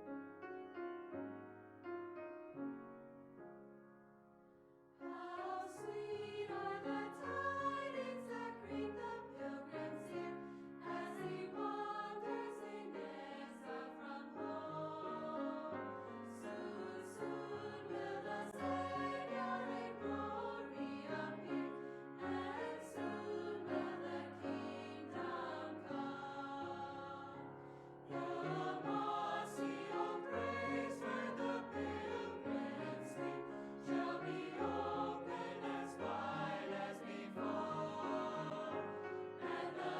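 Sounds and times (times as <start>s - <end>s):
choir singing: 5.0s - 39.9s.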